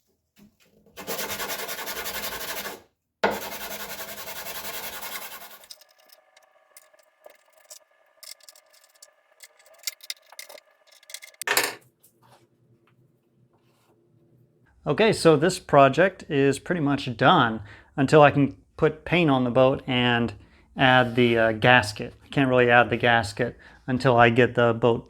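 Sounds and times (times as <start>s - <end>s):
sandpaper sanding: 1.0s - 5.9s
clicks and handling: 6.8s - 11.7s.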